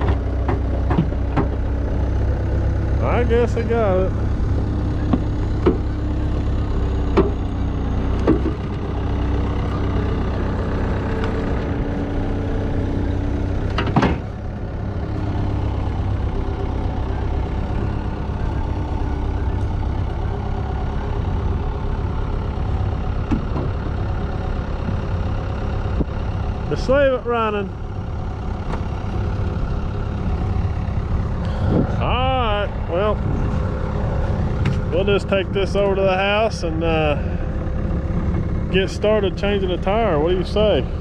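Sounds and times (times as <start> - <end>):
skid steer engine idling: 0.0 - 41.0
sharp knocks: 5.1 - 5.9, 7.1 - 7.4.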